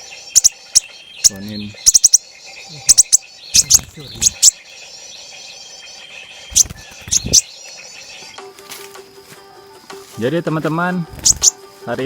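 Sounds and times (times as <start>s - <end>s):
bird sharp chirps: 0.0s - 8.5s, 11.0s - 11.6s
insects and birds chorus: 0.0s - 12.0s.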